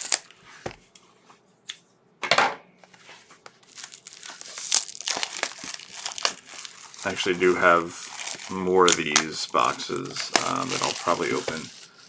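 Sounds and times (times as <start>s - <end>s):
plastic shrink wrap crinkling: 0.0s - 0.3s, 3.5s - 12.0s
shrink wrap ripping: 0.0s - 0.3s, 3.6s - 12.0s.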